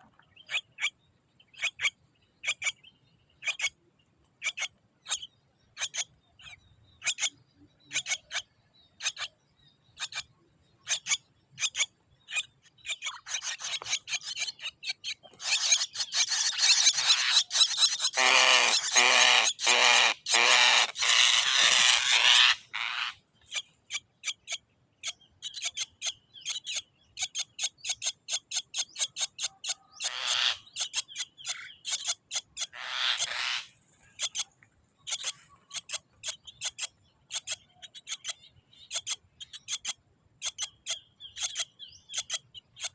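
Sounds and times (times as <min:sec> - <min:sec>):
bird scratchy chattering: 0:10.9 - 0:24.5, 0:25.4 - 0:42.9
bird clicking calls: 0:12.8 - 0:19.0.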